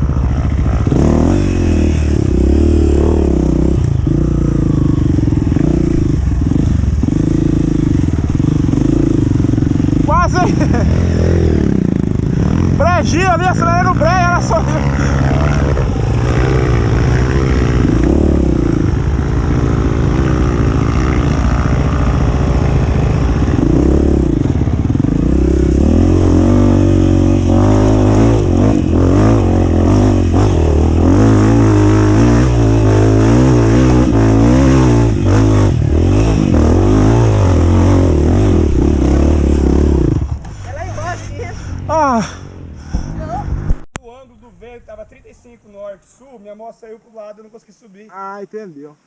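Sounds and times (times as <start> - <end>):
dirt bike engine revving: 0.0 - 42.2.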